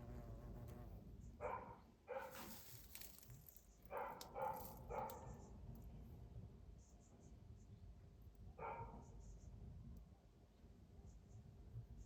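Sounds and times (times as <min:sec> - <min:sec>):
dog barking: 0:01.4 - 0:02.4, 0:03.9 - 0:05.3, 0:08.6 - 0:09.0.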